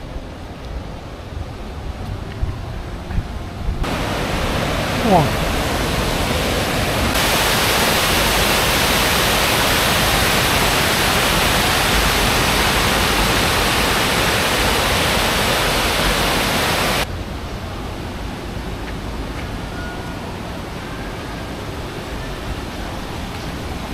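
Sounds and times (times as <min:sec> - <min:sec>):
rushing mountain stream: 0:03.8 - 0:18.6.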